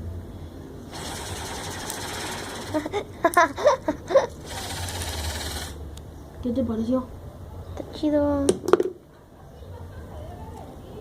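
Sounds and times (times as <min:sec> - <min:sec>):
fidget spinner whirring: 0:00.9 - 0:05.8.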